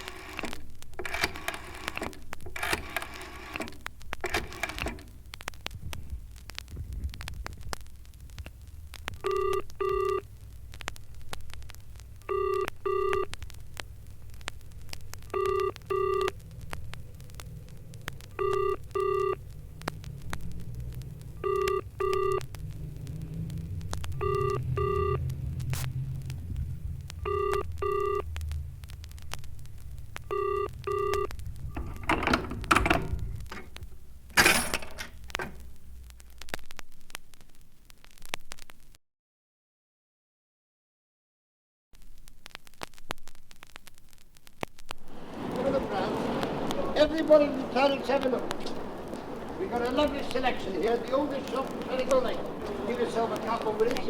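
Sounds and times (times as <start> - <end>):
low hum: 0.0 - 37.8.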